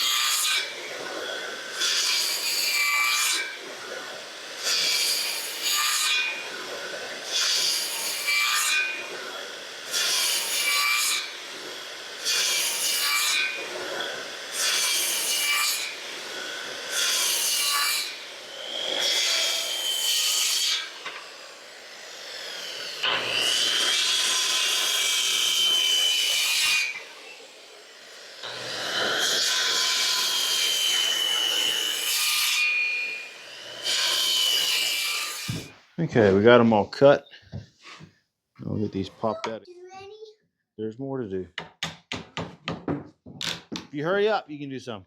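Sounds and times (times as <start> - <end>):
saw cutting wood: 0.0 - 36.9.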